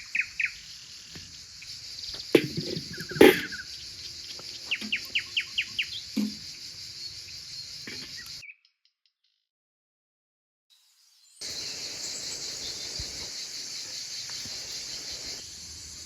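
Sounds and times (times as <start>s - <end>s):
high-pitched insect drone: 11.4s - 16.0s.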